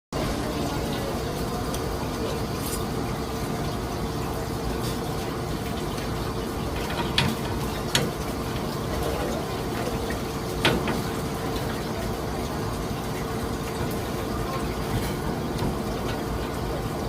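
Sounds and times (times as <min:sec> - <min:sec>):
water running: 0:00.2 - 0:17.0.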